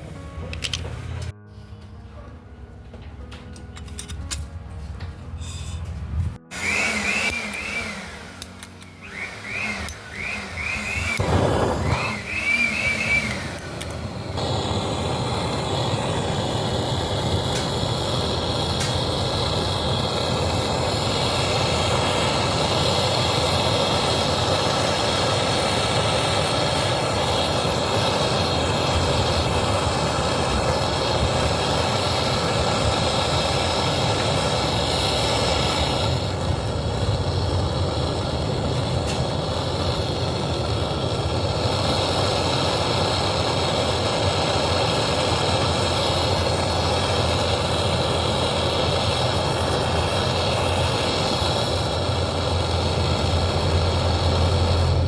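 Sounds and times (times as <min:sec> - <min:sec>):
machine running: 0:05.6 - 0:55.0
faint high whine: 0:06.9 - 0:41.2.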